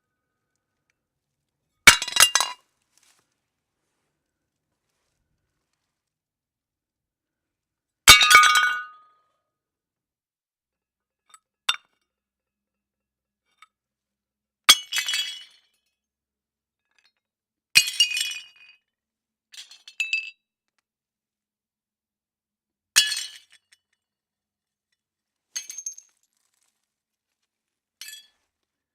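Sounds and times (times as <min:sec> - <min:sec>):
plates crashing: 0:01.9 - 0:02.6.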